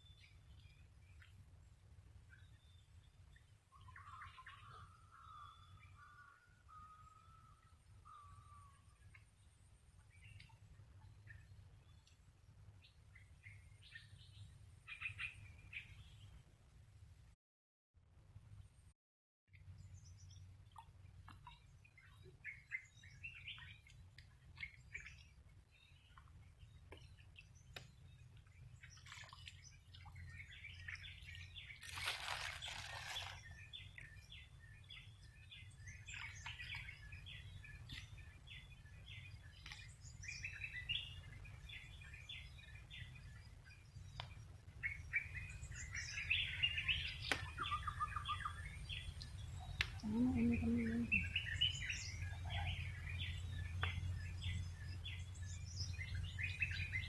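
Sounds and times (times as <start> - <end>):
small birds chirping: 19.8 - 57.0.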